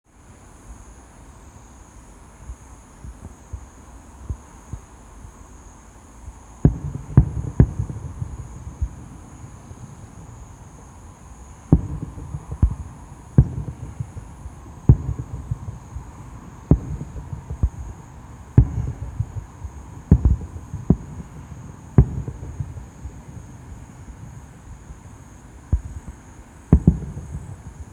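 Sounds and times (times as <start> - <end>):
fireworks booming: 6.6 - 27.9.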